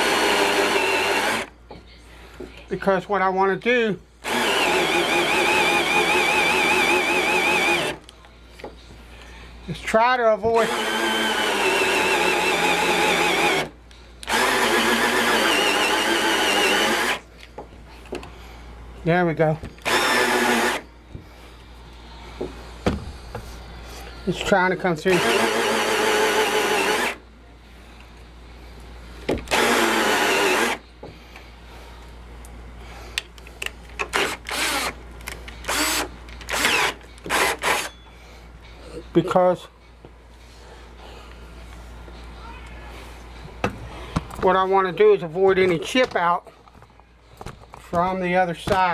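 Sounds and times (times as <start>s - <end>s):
power drill boring into door: 0.0s - 1.5s, 4.3s - 8.0s, 10.6s - 17.2s, 19.8s - 20.8s, 25.1s - 27.2s, 29.5s - 30.8s, 34.1s - 35.0s, 35.7s - 37.9s.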